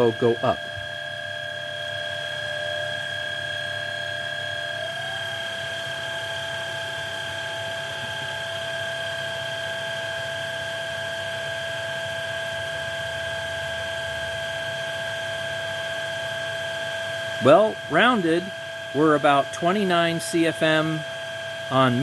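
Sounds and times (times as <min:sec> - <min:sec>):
vacuum cleaner motor whining: 0:02.2 - 0:10.2.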